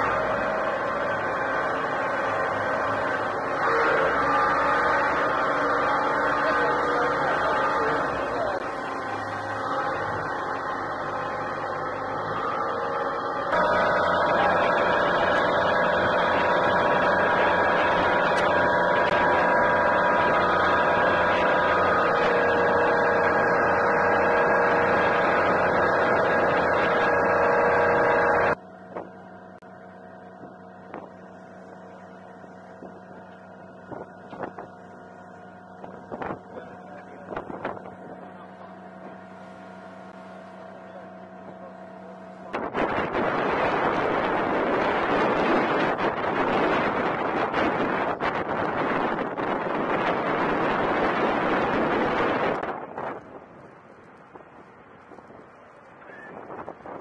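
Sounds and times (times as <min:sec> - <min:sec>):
whining tones: 0:00.0 - 0:41.0
loud machinery drone: 0:00.0 - 0:57.0
low hum: 0:00.0 - 0:57.0.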